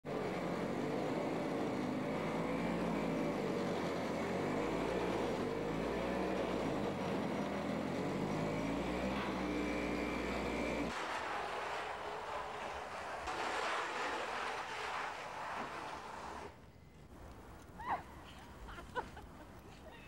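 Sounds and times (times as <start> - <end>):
snow blower engine running: 0.0 - 16.5.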